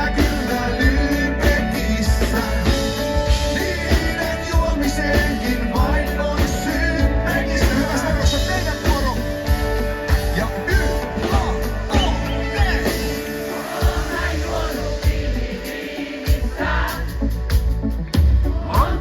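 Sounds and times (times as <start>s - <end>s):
person singing: 0.0s - 9.4s
live band playing: 0.0s - 19.0s
steady drum beat: 0.0s - 19.0s.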